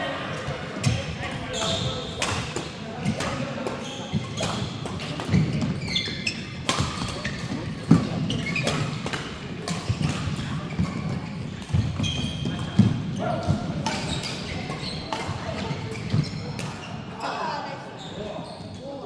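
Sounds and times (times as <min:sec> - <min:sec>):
shoe squeaks: 0:01.4 - 0:02.1, 0:03.8 - 0:07.6, 0:12.0 - 0:13.3, 0:13.9 - 0:19.0
racket hitting shuttlecock: 0:02.2 - 0:16.8.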